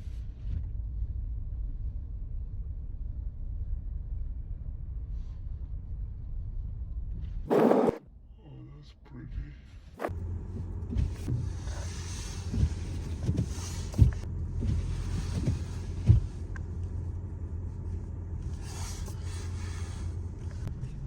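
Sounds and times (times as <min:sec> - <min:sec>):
low road rumble: 0:00.0 - 0:21.0.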